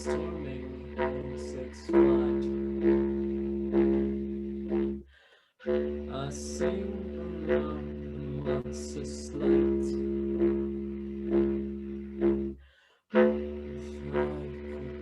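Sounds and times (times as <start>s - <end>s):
double bass: 0.0s - 5.1s, 5.7s - 12.6s, 13.2s - 15.0s
bass clarinet: 0.0s - 15.0s.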